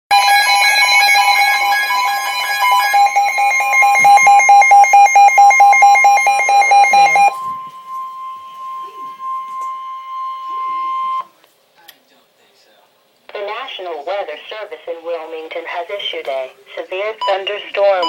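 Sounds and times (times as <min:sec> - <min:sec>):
loud pulsing electronic alarm: 0:00.1 - 0:11.3
steady single tone: 0:07.1 - 0:11.3.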